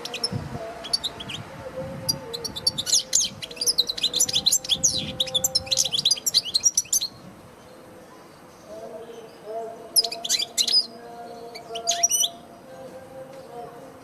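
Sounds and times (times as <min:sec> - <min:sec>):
goldfinch twittering song: 0:00.0 - 0:01.5, 0:02.1 - 0:07.8, 0:08.5 - 0:12.4.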